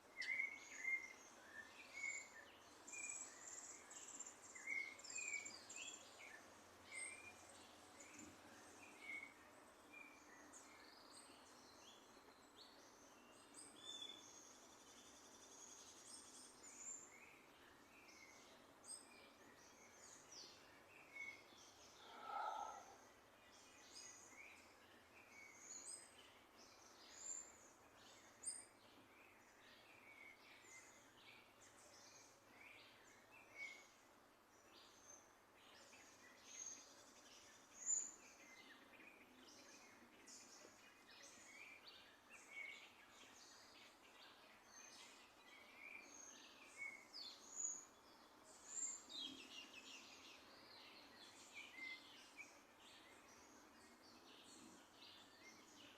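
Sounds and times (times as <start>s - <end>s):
small birds chirping: 0.0s - 55.9s
low bird call: 22.0s - 23.0s.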